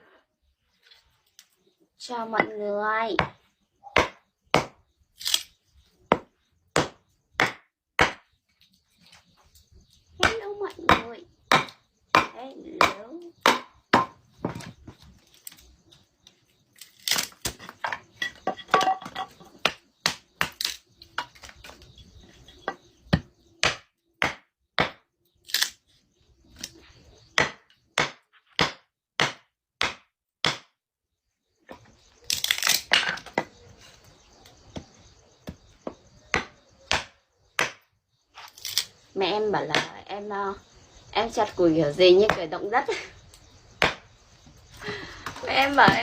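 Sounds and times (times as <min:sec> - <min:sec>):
axe chopping firewood: 0:03.2 - 0:05.4, 0:06.1 - 0:08.4, 0:10.2 - 0:15.1, 0:16.9 - 0:21.8, 0:23.1 - 0:25.7, 0:27.4 - 0:30.8, 0:34.8 - 0:37.8, 0:43.8 - 0:44.1.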